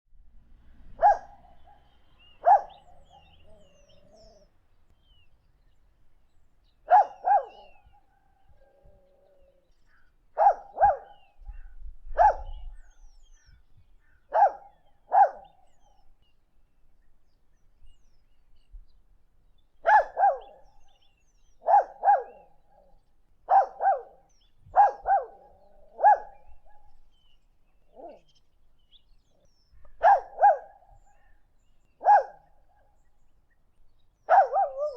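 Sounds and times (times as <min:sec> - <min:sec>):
birds chirping faintly: 0:00.2 - 0:34.9
puppy barking: 0:01.0 - 0:04.4, 0:06.9 - 0:07.9, 0:10.4 - 0:11.2, 0:12.2 - 0:12.6, 0:14.3 - 0:15.6, 0:19.8 - 0:20.6, 0:21.6 - 0:22.5, 0:23.5 - 0:26.9, 0:27.9 - 0:28.2, 0:30.0 - 0:30.8, 0:32.0 - 0:32.5, 0:34.3 - 0:34.9.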